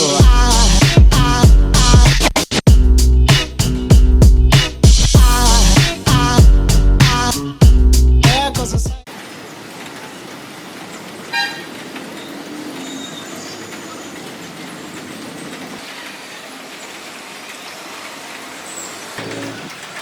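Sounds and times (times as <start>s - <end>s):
background traffic noise: 9.1s - 20.0s
vehicle horn toot: 11.3s - 11.8s.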